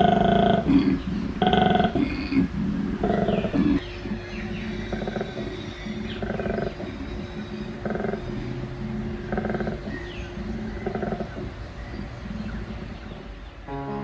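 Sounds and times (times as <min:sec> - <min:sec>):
koala bellowing: 0:03.0 - 0:14.0.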